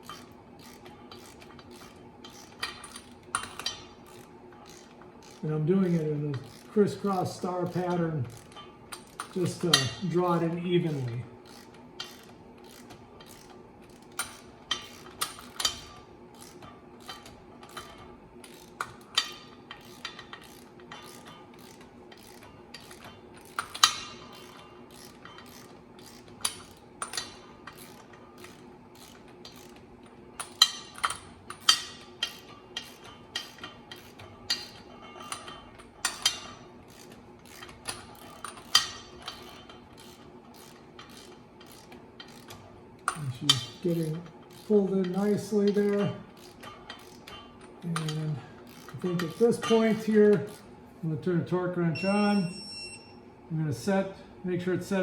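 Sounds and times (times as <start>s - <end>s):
hand ratchet clicking: 0.0s - 50.7s.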